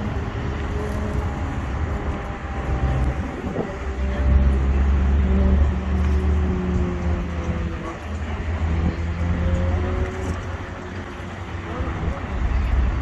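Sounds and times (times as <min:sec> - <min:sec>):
engine running with low rumble: 0:00.0 - 0:13.0.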